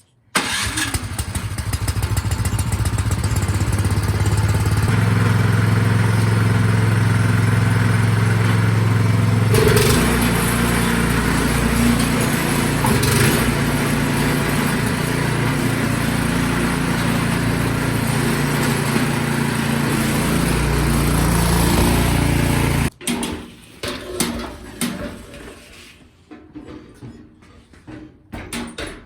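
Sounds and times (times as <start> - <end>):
snowblower engine running: 0.4 - 22.9.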